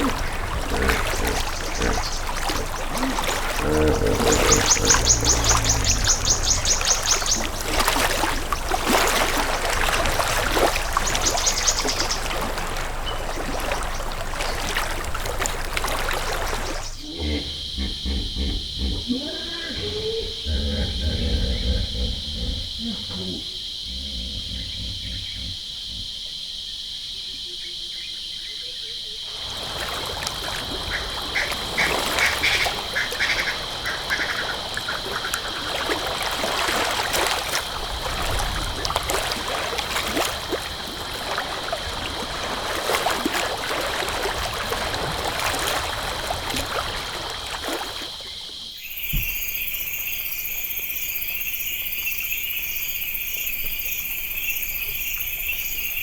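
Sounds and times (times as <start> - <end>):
short animal calls: 0.0 - 7.6, 17.0 - 26.1
high insect drone: 0.0 - 56.0
pulsing insect chorus: 0.0 - 56.0.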